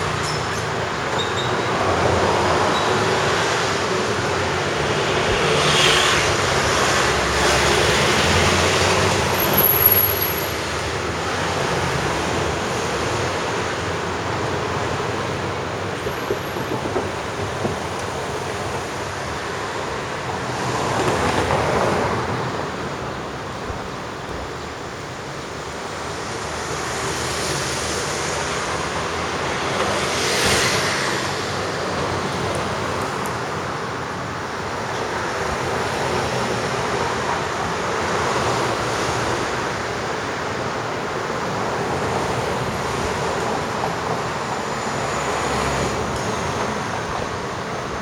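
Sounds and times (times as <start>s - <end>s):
vehicles passing: 0.0s - 48.0s.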